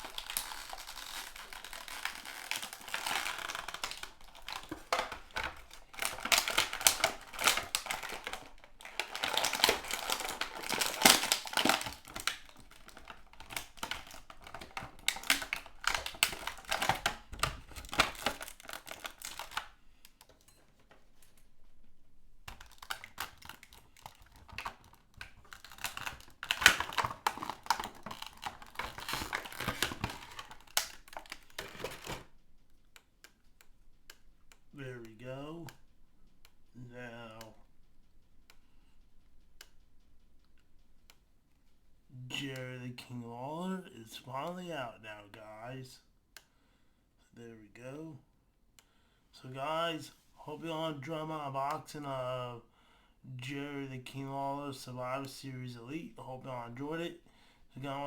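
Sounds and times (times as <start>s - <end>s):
plastic packaging crinkling: 0.0s - 32.4s.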